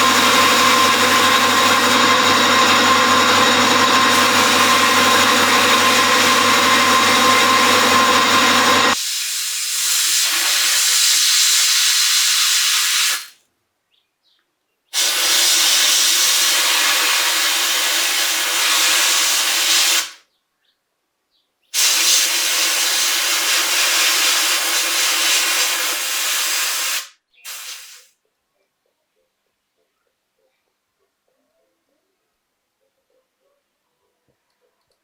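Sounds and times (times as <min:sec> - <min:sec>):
air tool hissing: 0:00.0 - 0:13.4, 0:15.0 - 0:20.2, 0:21.8 - 0:28.1.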